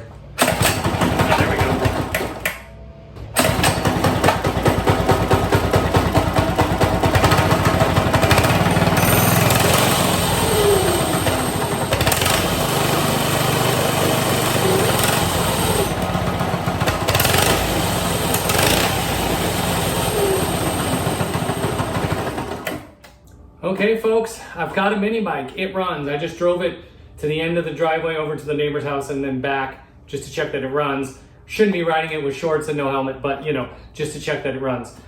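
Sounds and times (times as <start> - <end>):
small engine running: 0.4 - 2.5, 3.4 - 22.9.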